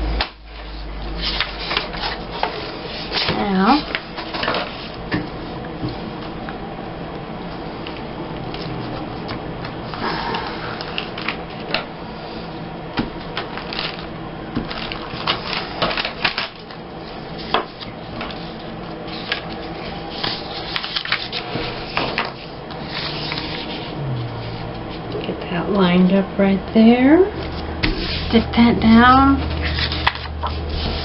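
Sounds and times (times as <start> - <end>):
steady low hum: 0.0 - 31.0
paper rustling: 14.7 - 22.2, 22.9 - 23.9, 29.4 - 31.0.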